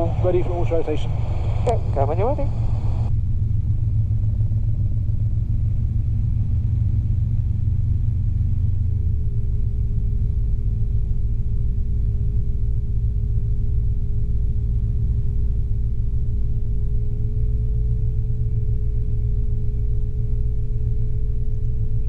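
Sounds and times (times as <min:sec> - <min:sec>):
low-pitched warning tone: 0:00.0 - 0:07.1
helicopter rotor and engine drone: 0:00.0 - 0:22.0.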